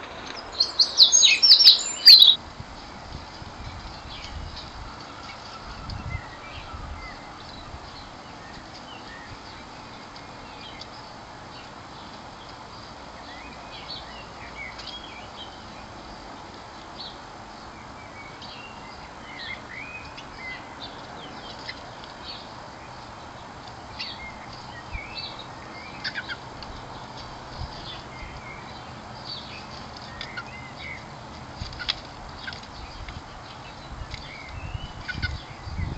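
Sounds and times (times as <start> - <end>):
steady background hiss: 0.0 - 35.8
small birds chirping: 0.0 - 35.9.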